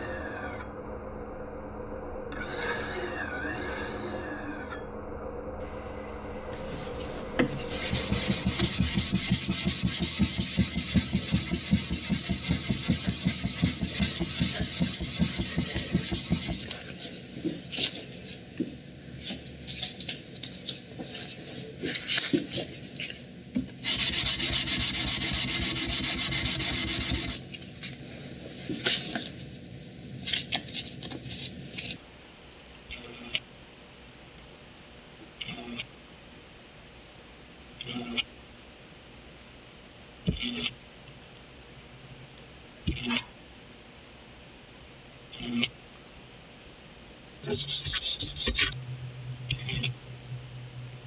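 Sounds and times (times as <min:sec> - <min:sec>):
steady hissing: 0:06.4 - 0:32.0
abrasive rubbing strokes on knife: 0:06.6 - 0:18.5, 0:23.8 - 0:27.5, 0:47.4 - 0:48.8.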